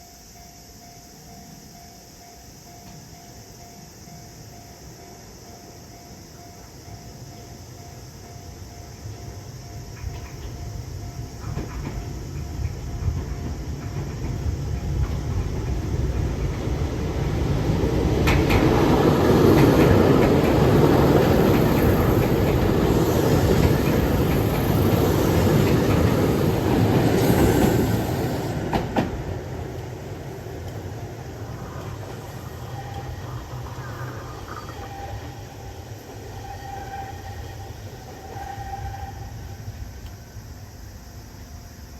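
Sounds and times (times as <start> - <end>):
rumble of wheels on rail: 0.0 - 41.9
wheel clacks: 11.4 - 27.8.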